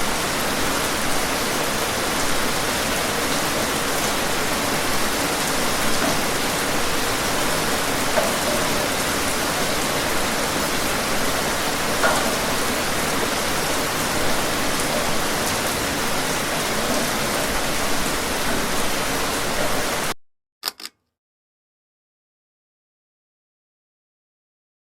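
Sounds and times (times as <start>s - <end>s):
pouring rain: 0.0s - 20.2s
brief clicks: 20.6s - 21.0s.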